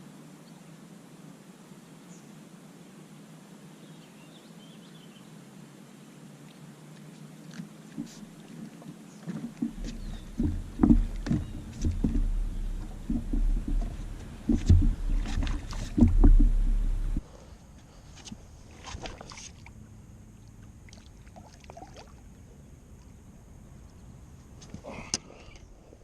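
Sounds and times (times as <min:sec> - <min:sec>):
boat low rumble: 0:07.8 - 0:17.8
knocks and thumps: 0:09.3 - 0:17.2.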